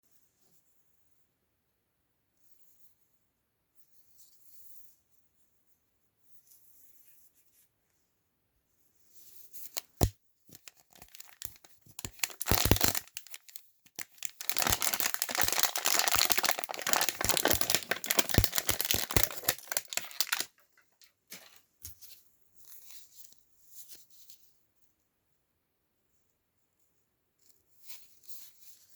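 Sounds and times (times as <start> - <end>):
wrapping snap: 9.6 - 20.5
toy wrapping tearing and crinkling: 9.6 - 20.6.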